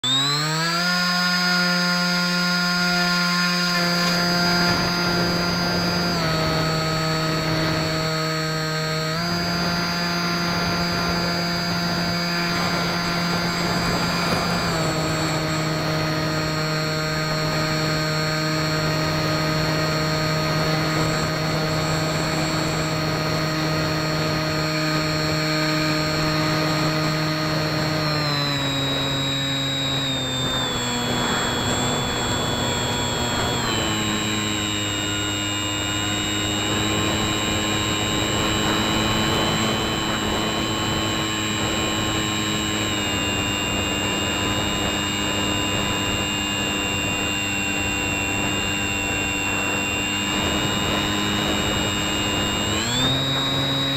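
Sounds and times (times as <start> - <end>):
model plane motor whining: 0.0 - 53.9.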